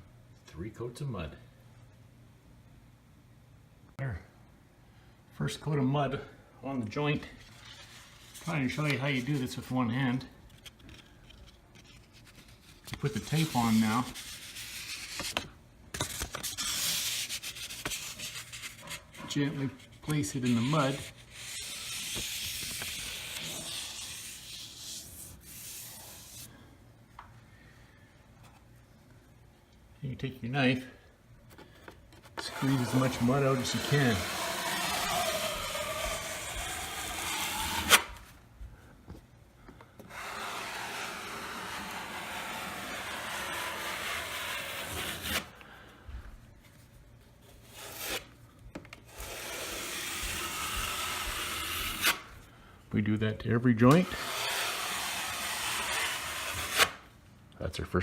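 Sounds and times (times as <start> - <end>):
drywall tape rubbing hiss: 10.6 - 15.5, 16.1 - 26.6, 32.4 - 38.4, 40.0 - 45.6, 49.0 - 52.4, 54.0 - 57.1.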